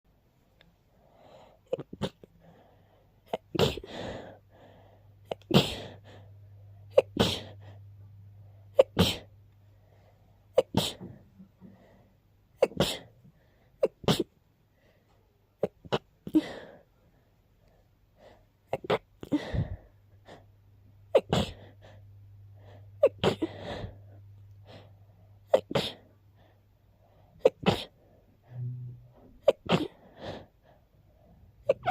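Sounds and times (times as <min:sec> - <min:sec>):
person sneezing: 0:03.3 - 0:04.1, 0:05.3 - 0:06.0, 0:06.9 - 0:07.6, 0:08.8 - 0:09.3, 0:10.5 - 0:11.1, 0:12.6 - 0:13.1, 0:21.1 - 0:21.8, 0:23.0 - 0:23.9, 0:25.5 - 0:26.1, 0:27.4 - 0:28.0, 0:29.4 - 0:30.0, 0:31.6 - 0:31.9.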